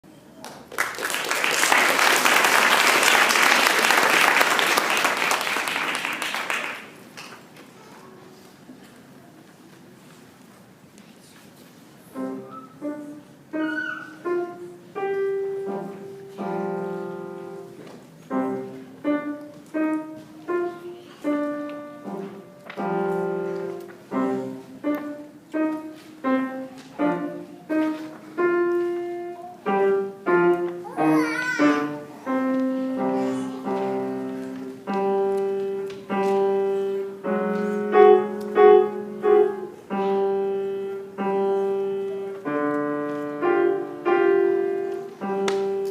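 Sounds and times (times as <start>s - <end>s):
solo piano playing slow piece: 12.1s - 45.9s.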